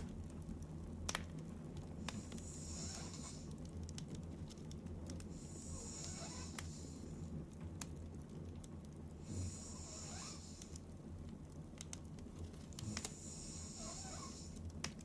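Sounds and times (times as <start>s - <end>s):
woman snoring softly: 2.1s - 3.5s, 5.4s - 7.1s, 9.2s - 10.8s, 12.8s - 14.6s.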